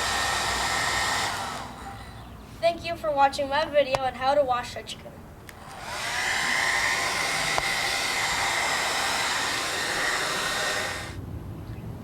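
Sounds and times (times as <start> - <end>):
hair dryer whining and blowing: 0.0 - 2.1, 5.6 - 11.2.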